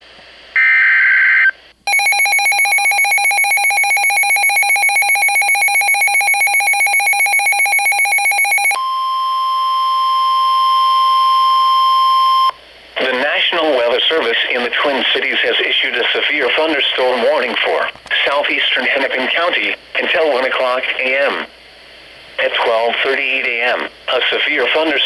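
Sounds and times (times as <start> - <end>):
rapidly pulsing alarm beep: 1.9 - 8.8
steady warning alarm tone: 1.9 - 9.0.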